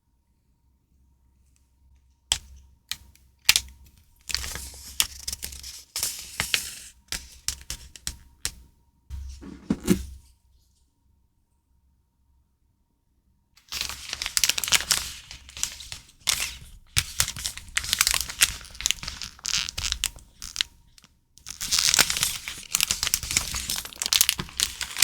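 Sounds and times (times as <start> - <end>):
paper and plastic rustling: 9.2 - 10.3, 13.7 - 25.0
crinkling rustle: 13.7 - 25.0.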